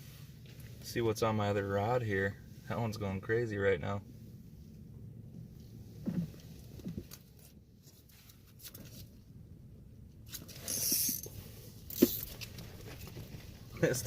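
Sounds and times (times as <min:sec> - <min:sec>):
fishing rod scratchy rustle: 0:07.2 - 0:09.2, 0:10.2 - 0:13.5.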